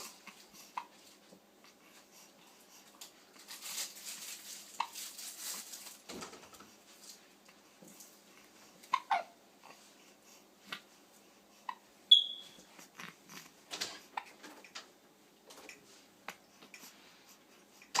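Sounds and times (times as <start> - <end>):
hiccups: 8.9 - 9.4
sharp high-pitched squeak: 12.1 - 12.6.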